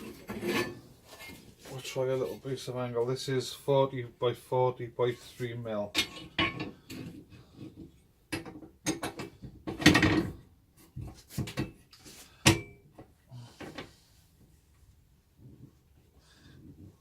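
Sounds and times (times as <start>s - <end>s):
metal scrape: 0.0s - 1.8s.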